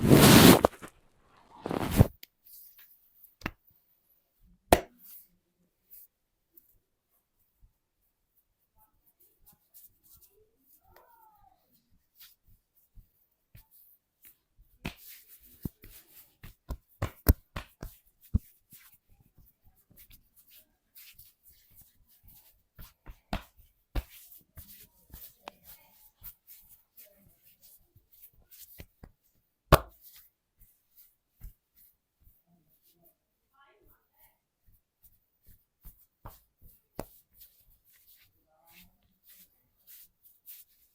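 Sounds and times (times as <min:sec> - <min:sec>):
massage slaps and taps: 0:03.4 - 0:03.6, 0:04.7 - 0:05.0, 0:14.2 - 0:18.9, 0:22.8 - 0:25.3, 0:28.7 - 0:30.8, 0:35.4 - 0:38.3.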